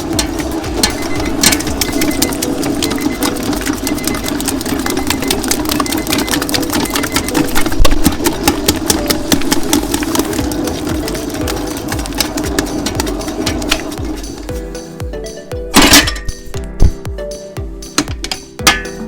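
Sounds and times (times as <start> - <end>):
dough mixer motor humming: 0.0 - 14.5
mixer clicks and knocks: 0.0 - 14.5, 17.9 - 19.0.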